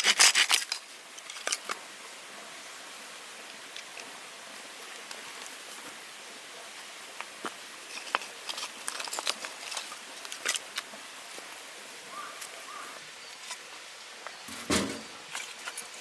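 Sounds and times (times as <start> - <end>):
light clicks and knocks: 14.5 - 15.2.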